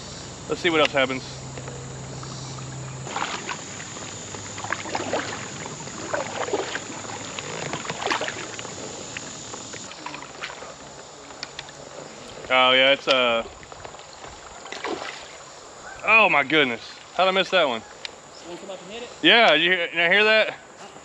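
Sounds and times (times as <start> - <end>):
high insect buzz: 0.0 - 21.0
water splashing around kayak: 2.0 - 18.3.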